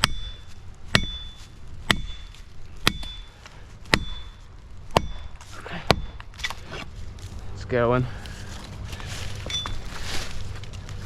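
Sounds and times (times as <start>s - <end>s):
hammer striking metal wedge: 0.0s - 3.3s, 3.9s - 6.2s.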